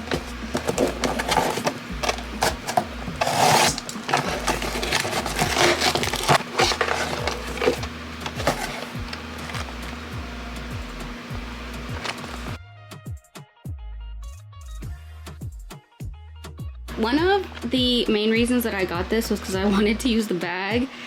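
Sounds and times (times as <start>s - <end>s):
phone case scraping: 0.0s - 10.0s.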